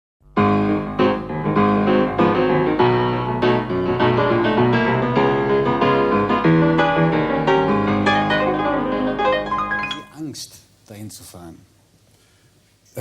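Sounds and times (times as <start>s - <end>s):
piano music: 0.2s - 10.3s.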